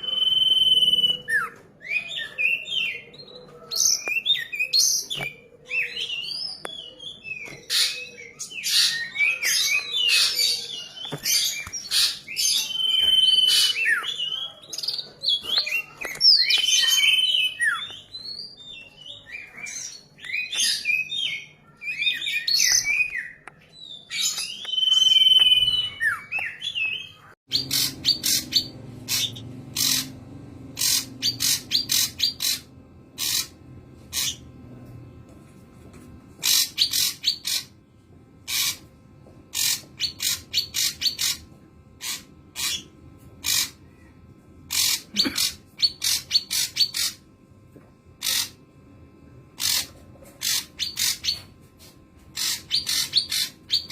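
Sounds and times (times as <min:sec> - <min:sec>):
bird singing whistled phrases: 0:00.0 - 0:03.0
bird chipping notes: 0:00.0 - 0:34.8, 0:36.4 - 0:37.8, 0:38.4 - 0:38.9, 0:39.5 - 0:47.3, 0:49.5 - 0:53.9.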